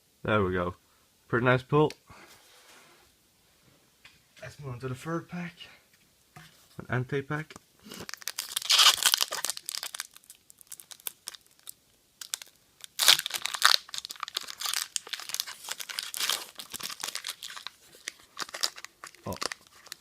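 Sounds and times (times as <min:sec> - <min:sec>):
foil wrapper crinkling and tearing: 0:07.9 - 0:20.0.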